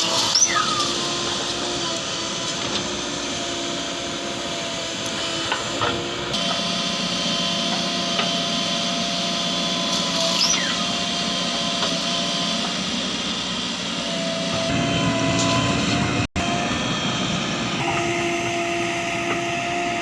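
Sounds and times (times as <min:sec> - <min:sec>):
diesel engine under load: 0:00.0 - 0:20.0
brief falling squeal: 0:00.2 - 0:01.0, 0:10.2 - 0:11.0.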